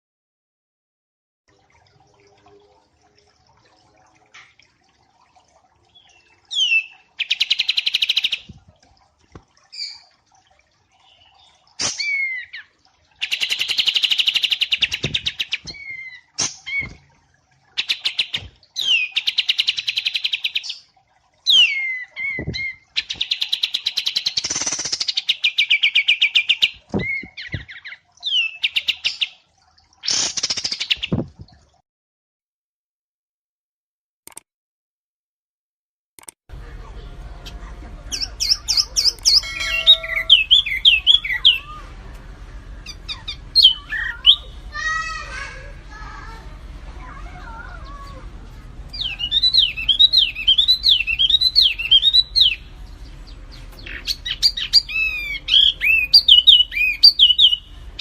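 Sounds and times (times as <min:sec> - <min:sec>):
songbird whistles and trills: 0:38.1 - 0:41.9, 0:42.8 - 0:44.6, 0:48.9 - 0:52.7, 0:53.8 - 0:57.7.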